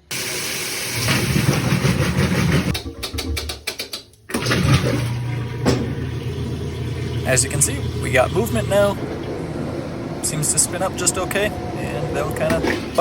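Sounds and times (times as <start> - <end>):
washing machine motor humming: 0.0 - 3.4, 4.3 - 13.0
water sloshing: 4.3 - 13.0.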